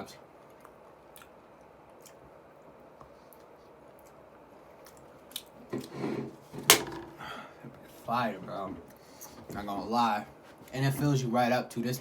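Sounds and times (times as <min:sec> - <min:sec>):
man chewing food: 0:00.4 - 0:05.9.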